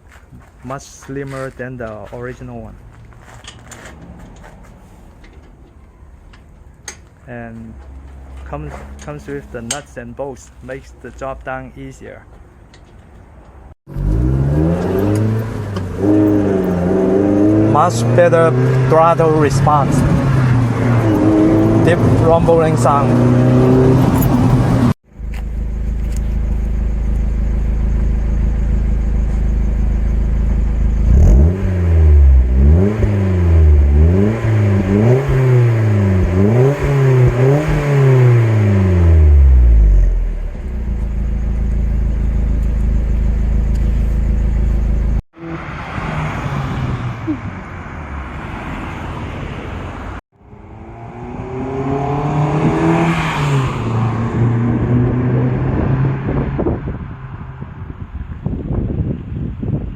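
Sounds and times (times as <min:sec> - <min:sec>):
car engine idling and revving: 0:02.7 - 0:11.6, 0:12.3 - 0:58.7
car engine accelerating: 0:07.5 - 0:09.9, 0:13.9 - 0:49.0, 0:49.6 - 0:57.9.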